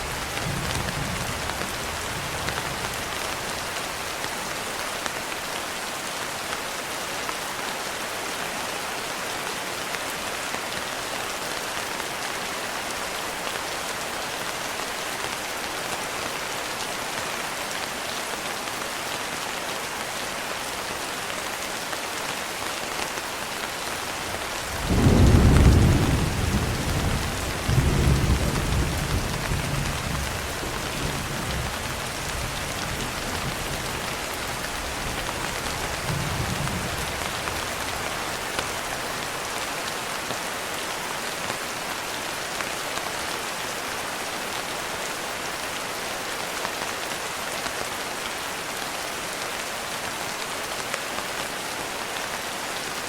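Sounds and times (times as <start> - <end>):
steady rain falling: 0.0 - 53.0
thunder rumbling: 24.6 - 30.4.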